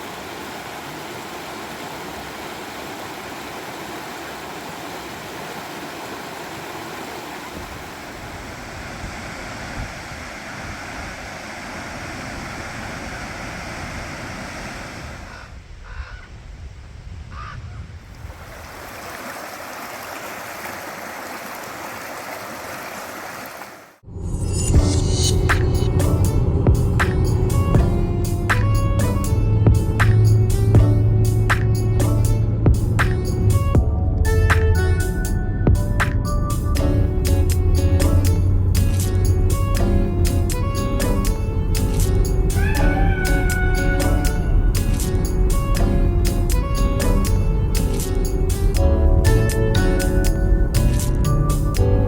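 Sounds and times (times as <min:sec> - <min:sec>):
mountain stream rushing: 0:00.0 - 0:15.4, 0:18.2 - 0:24.0, 0:37.4 - 0:51.2.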